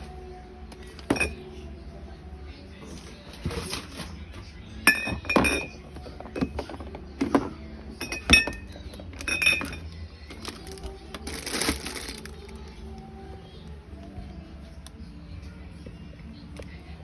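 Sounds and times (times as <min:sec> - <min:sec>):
glass bottles clinking: 0:01.0 - 0:01.5, 0:04.8 - 0:12.2.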